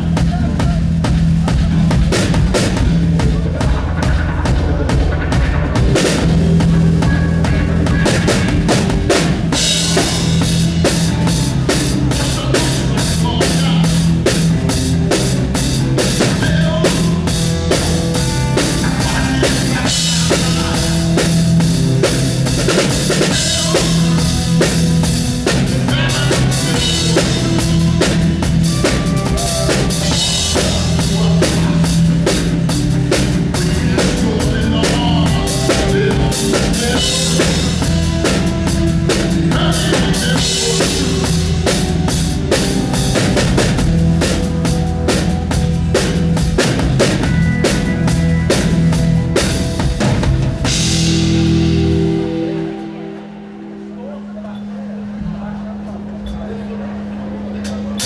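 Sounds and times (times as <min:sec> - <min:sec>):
drum kit groove: 0:00.0 - 0:53.6
bass notes: 0:00.0 - 0:58.0.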